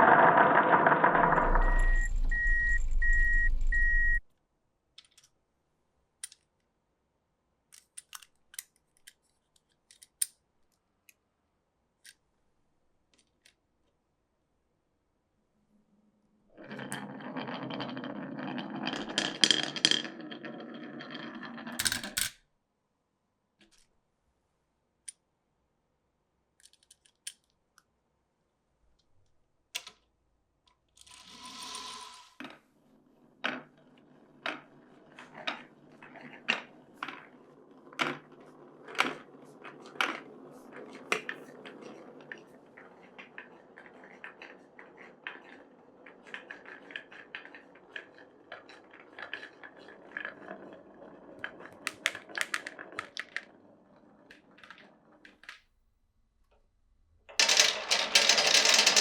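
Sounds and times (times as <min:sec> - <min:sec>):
marbles clacking on track: 0:00.0 - 0:04.2, 0:16.6 - 0:22.3, 0:31.0 - 0:32.5, 0:51.3 - 0:53.6, 0:57.3 - 0:59.0
marbles rolling on wood: 0:00.0 - 0:04.2, 0:16.6 - 0:22.3, 0:31.0 - 0:32.6, 0:33.2 - 0:55.6, 0:57.3 - 0:59.0.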